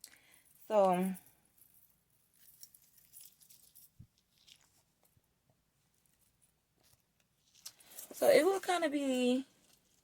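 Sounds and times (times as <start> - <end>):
metal chain jingling: 0.0 - 4.6.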